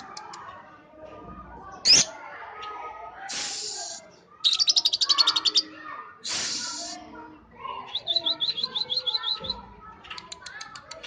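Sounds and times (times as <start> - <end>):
lovebird harsh rasp: 3.3 - 7.0.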